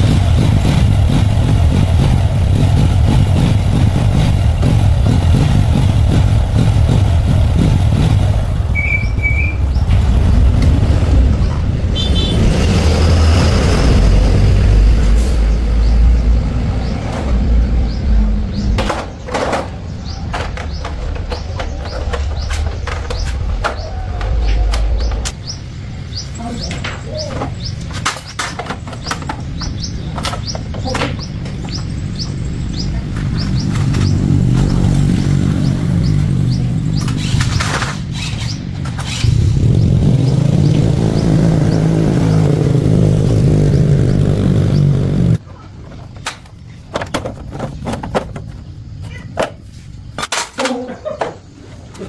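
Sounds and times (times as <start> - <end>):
motorcycle engine running: 0.0 - 15.0, 32.0 - 37.4, 39.1 - 45.4
birds chirping: 7.6 - 46.9.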